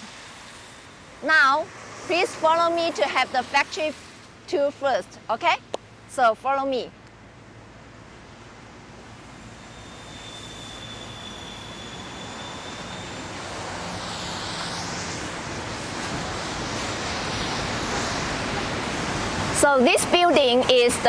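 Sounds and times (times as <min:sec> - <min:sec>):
approaching engine rushing: 0:00.0 - 0:04.5
faint high whine: 0:00.0 - 0:21.0.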